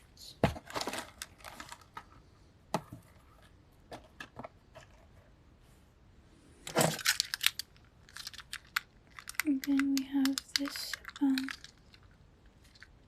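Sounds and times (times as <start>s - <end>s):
plastic toys rattling: 0.6s - 2.0s, 6.7s - 13.0s
plastic toys clicking and knocking: 6.7s - 13.0s.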